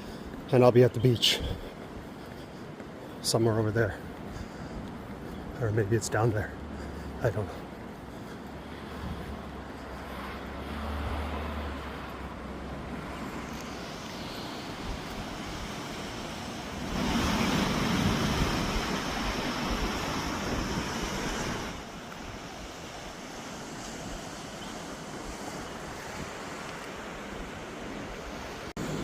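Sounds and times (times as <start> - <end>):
sea surf: 0.0 - 29.0
wind on microphone: 12.9 - 29.0.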